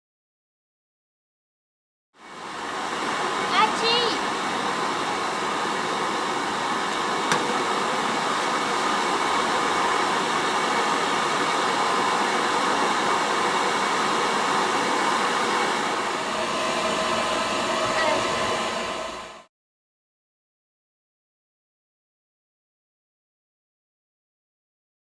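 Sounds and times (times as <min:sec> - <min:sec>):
rushing air from furnace blower: 0:02.2 - 0:19.5.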